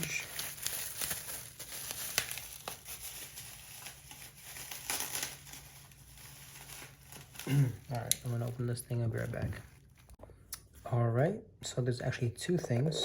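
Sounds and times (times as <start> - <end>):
packaging crinkling: 0.0 - 10.2.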